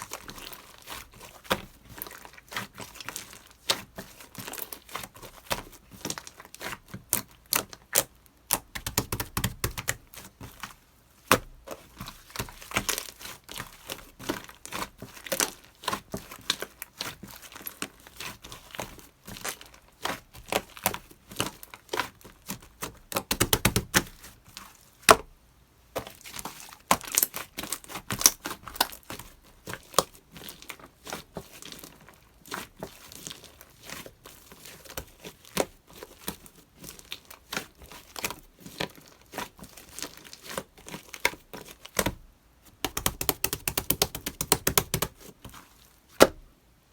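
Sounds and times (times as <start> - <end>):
slime squished by hand: 26.0 - 46.5.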